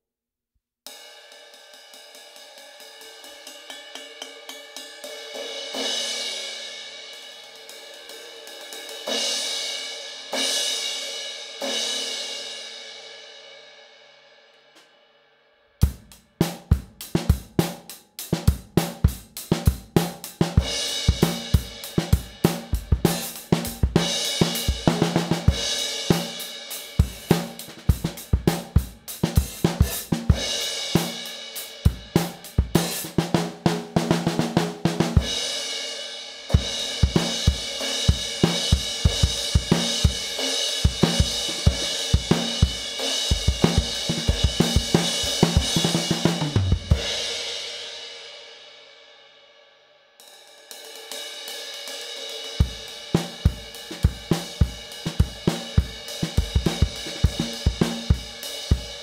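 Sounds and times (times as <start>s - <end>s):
drum beat: 15.8s - 35.4s, 36.5s - 47.4s, 52.6s - 59.0s.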